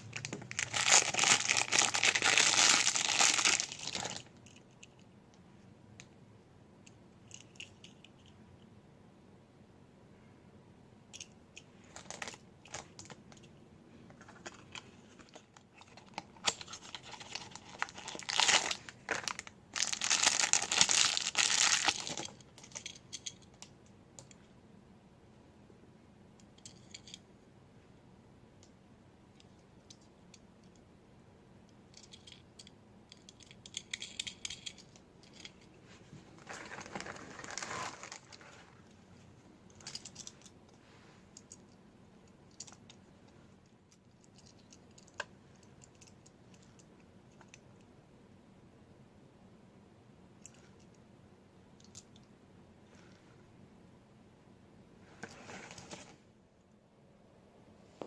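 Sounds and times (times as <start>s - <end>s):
toy packaging crinkling and tearing: 0.0s - 4.4s, 11.9s - 13.2s, 14.5s - 22.9s, 36.4s - 38.6s.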